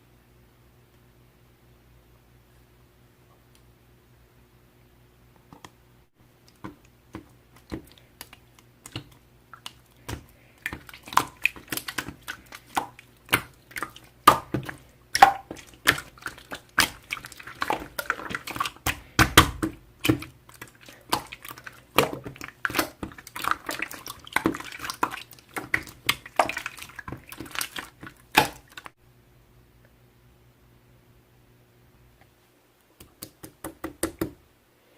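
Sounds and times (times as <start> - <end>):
slime squishing with wet clicks: 6.4 - 29.0.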